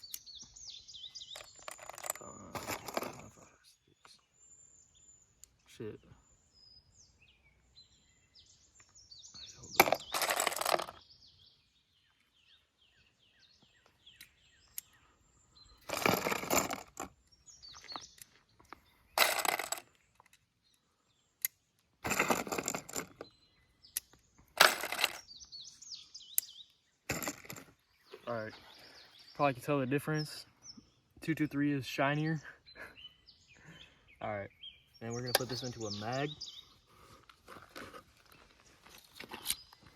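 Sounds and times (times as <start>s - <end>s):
birds chirping: 0.0s - 39.9s
rifle cartridges clinking together: 19.2s - 20.4s, 24.0s - 25.3s.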